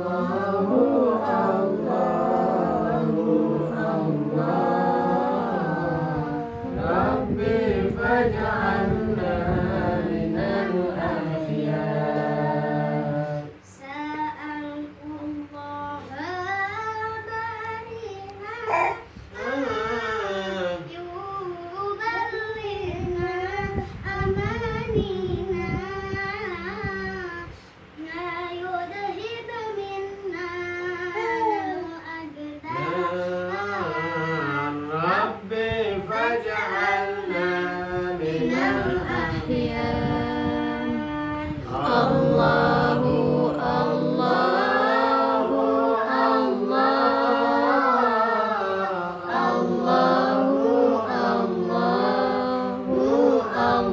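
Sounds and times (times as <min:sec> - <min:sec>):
group of voices singing: 0:00.0 - 0:13.8, 0:32.5 - 0:53.9
woman singing devotional song: 0:00.0 - 0:53.9.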